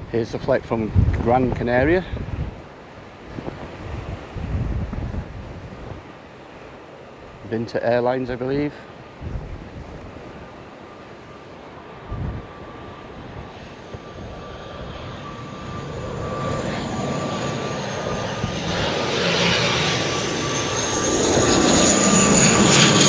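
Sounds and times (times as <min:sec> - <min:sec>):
airliner engines approaching: 0:00.0 - 0:23.0
steady engine whine: 0:10.8 - 0:23.0.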